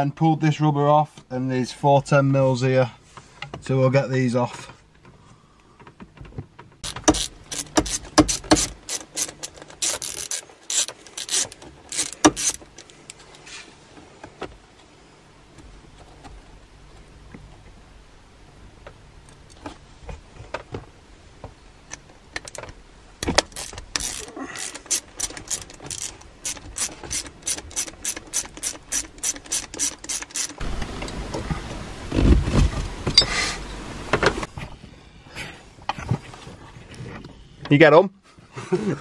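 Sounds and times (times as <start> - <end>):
ratchet wrench clicking: 6.8 - 12.9, 23.4 - 30.6.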